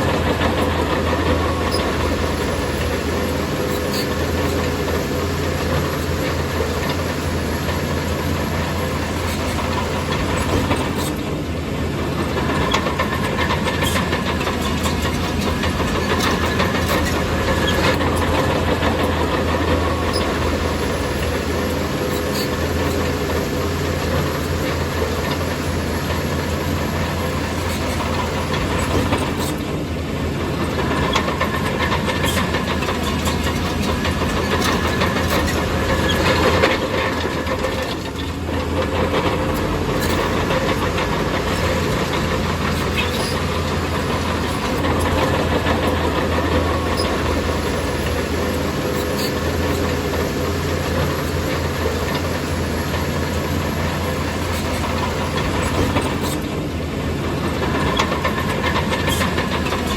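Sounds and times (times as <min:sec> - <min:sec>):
bulldozer diesel engine running: 0:00.0 - 0:59.9.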